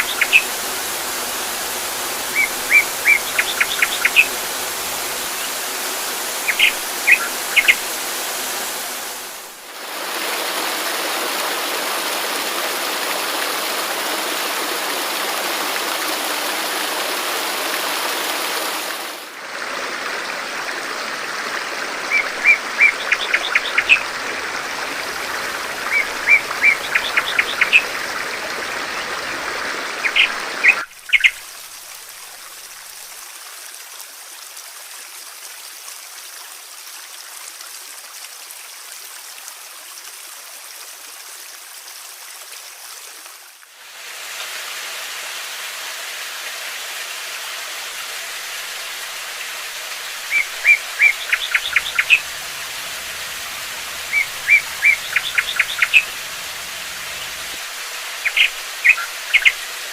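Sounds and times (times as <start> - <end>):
songbird chirping: 0.0 - 9.3, 22.1 - 28.5, 30.0 - 31.4, 49.9 - 57.6, 58.2 - 59.8
running water: 0.0 - 59.9.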